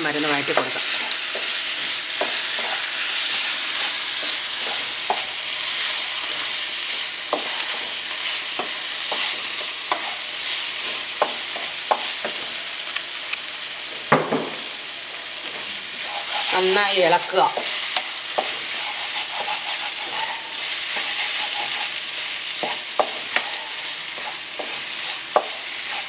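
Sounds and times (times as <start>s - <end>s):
onions sizzling in hot oil: 0.0s - 26.0s
ladle scraping and knocking pan: 18.4s - 21.9s.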